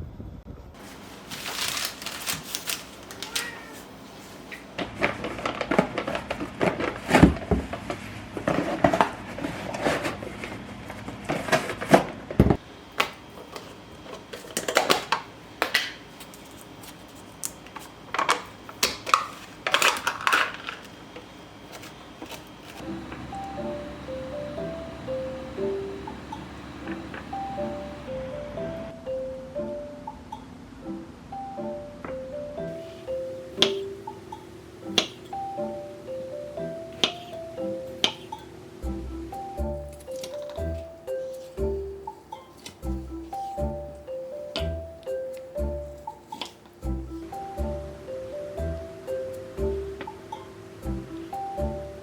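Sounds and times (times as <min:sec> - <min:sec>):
dishes and utensils clattering: 0:19.1 - 0:20.9, 0:37.0 - 0:38.5.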